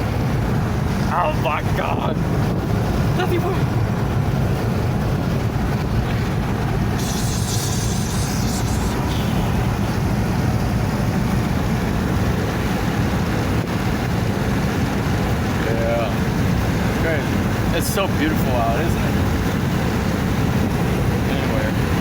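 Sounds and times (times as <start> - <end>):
car driving heard from inside: 0.0 - 22.0
brief high hiss: 7.0 - 9.6.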